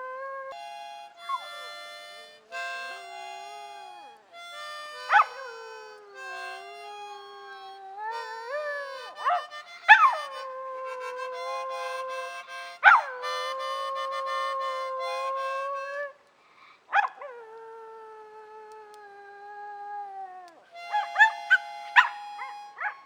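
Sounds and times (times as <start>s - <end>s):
dog howling: 5.0s - 16.1s, 17.0s - 23.0s.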